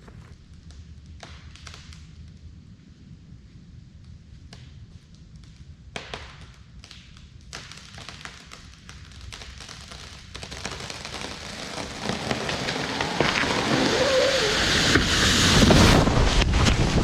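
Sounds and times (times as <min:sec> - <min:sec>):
tree wood cracking and popping: 0:04.6 - 0:15.1
branches rushing through canopy: 0:09.9 - 0:17.0
heavy crash of falling tree: 0:10.5 - 0:17.0.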